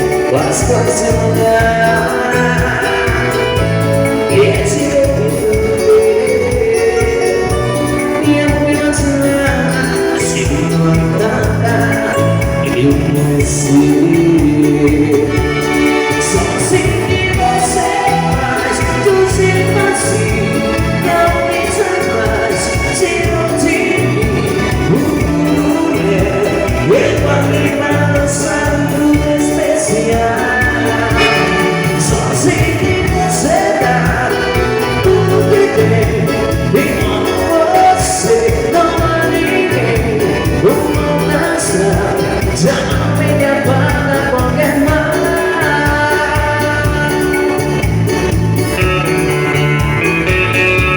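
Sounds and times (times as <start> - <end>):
live band playing bolero: 0.0 - 50.9
steady bass beat: 30.2 - 35.6.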